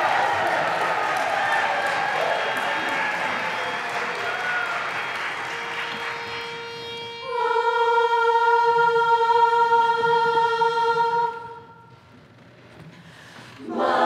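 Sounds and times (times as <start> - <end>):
applause: 0.0 - 6.8
chorus singing in unison: 7.2 - 11.5, 13.6 - 14.0.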